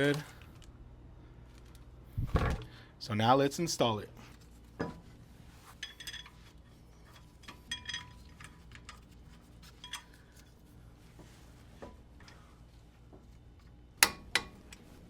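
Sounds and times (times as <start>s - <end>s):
metal tools clinking: 5.7s - 9.0s.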